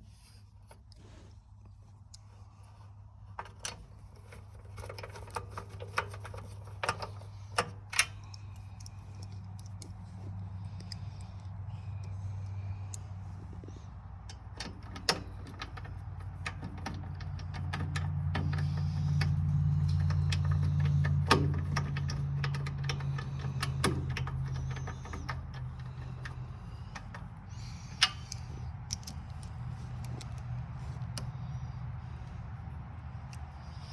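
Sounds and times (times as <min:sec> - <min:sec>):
low mechanical hum: 0:00.0 - 0:33.9
clicks and knocks on metal parts: 0:14.2 - 0:30.4.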